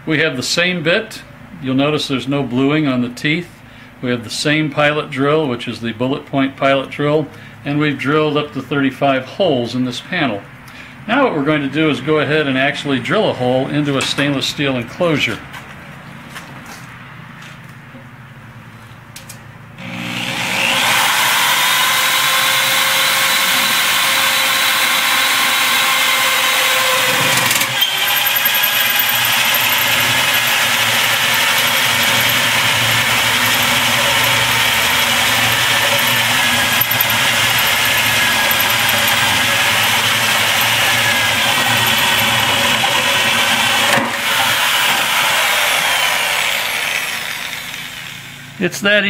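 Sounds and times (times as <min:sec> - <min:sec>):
electric drill cutting steel sheet: 0:19.8 - 0:48.5.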